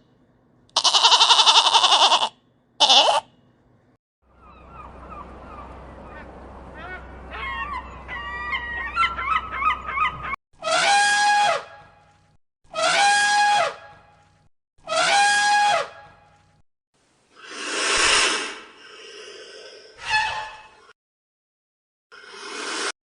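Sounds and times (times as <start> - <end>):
domestic fowl calling: 0.8 - 3.2, 4.4 - 11.6.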